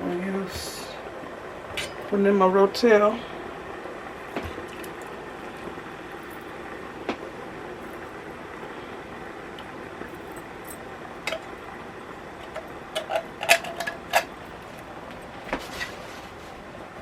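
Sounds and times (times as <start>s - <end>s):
steady low hiss: 0.0s - 17.0s.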